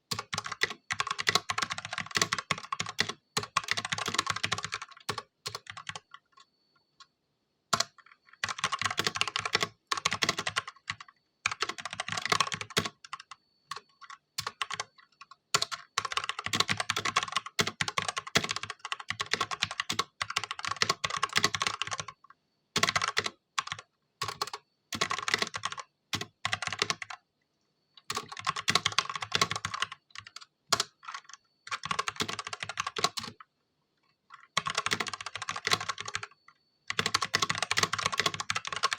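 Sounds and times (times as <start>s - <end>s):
mechanical keyboard typing: 0.1s - 7.1s, 7.7s - 27.2s, 28.0s - 33.5s, 34.3s - 38.9s.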